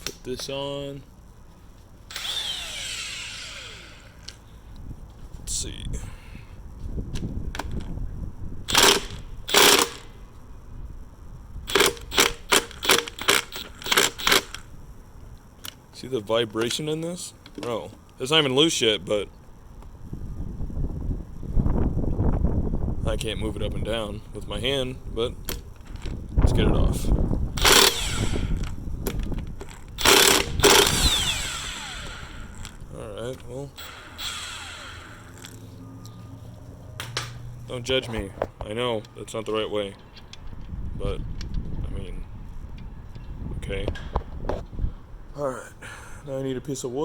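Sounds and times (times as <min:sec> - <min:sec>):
motor whining down: 0:02.1 - 0:04.4, 0:27.5 - 0:28.8, 0:29.7 - 0:33.0, 0:33.8 - 0:38.0.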